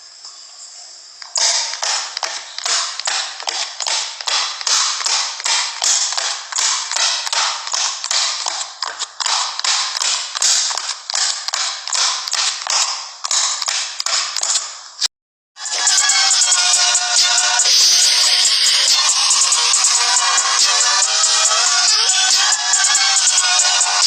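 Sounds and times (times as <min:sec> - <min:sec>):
fast steady tapping: 0:01.2 - 0:14.6.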